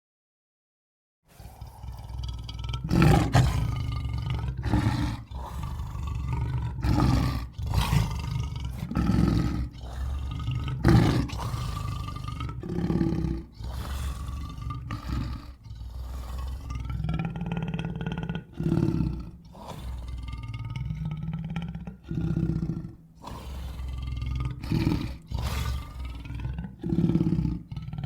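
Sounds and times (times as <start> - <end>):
deep creature roars: 1.3 - 28.0.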